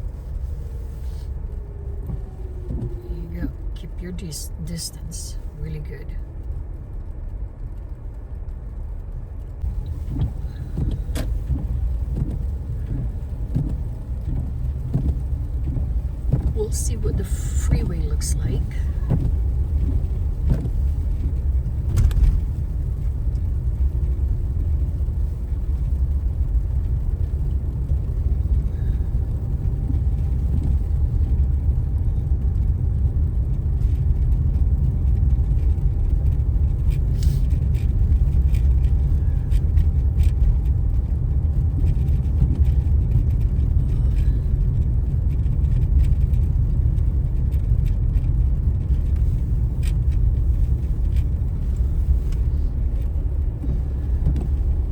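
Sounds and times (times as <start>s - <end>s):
car road rumble from inside: 0.0s - 54.9s.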